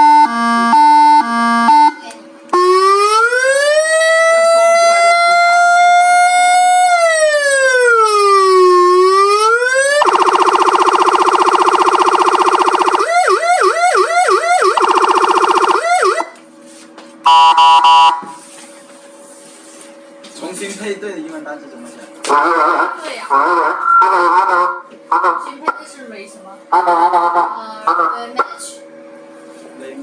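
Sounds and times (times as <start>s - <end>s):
electronic siren wailing and yelping: 0.0s - 2.0s, 2.6s - 16.4s, 17.3s - 18.3s, 22.3s - 25.8s, 26.7s - 28.5s.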